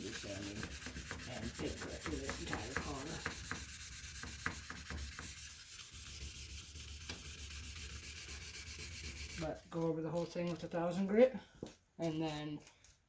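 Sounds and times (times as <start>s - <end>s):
sandpaper rubbing wet plastic: 0.0s - 10.3s
scratchy sanding strokes: 0.0s - 10.7s.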